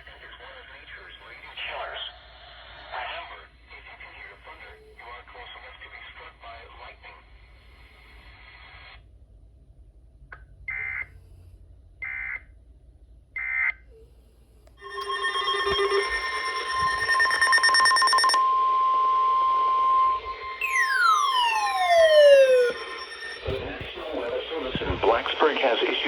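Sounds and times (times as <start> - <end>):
loud steady alarm tone: 14.8 - 26.0
screechy digital data tone: 14.8 - 26.0.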